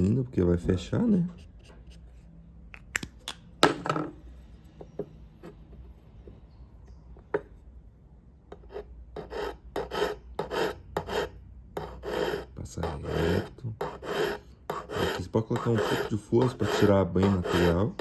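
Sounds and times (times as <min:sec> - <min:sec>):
hand file rasping on metal: 0:08.6 - 0:18.0.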